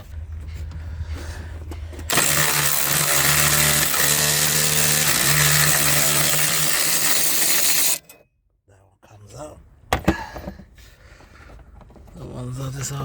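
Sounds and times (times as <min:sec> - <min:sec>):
power tool motor spinning: 0:02.1 - 0:08.1.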